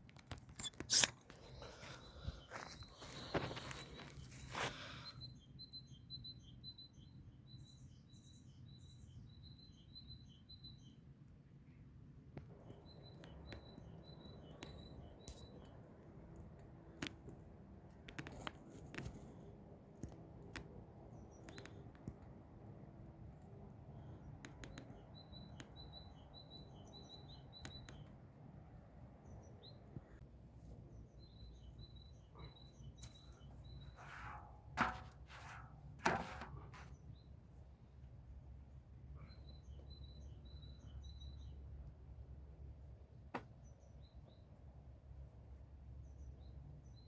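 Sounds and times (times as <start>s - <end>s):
small bird chirping: 0.5s - 11.0s, 12.6s - 15.9s, 23.9s - 28.2s, 29.2s - 34.4s.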